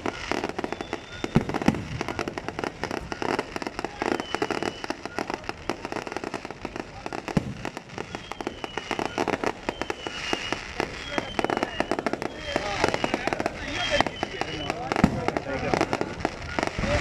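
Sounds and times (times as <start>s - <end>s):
firework whistles: 0.0s - 17.0s
fireworks bangs and crackling: 0.0s - 17.0s.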